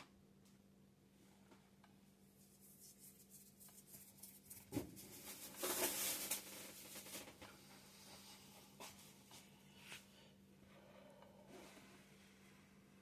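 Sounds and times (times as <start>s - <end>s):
bread crackling and rustling: 2.6s - 7.6s.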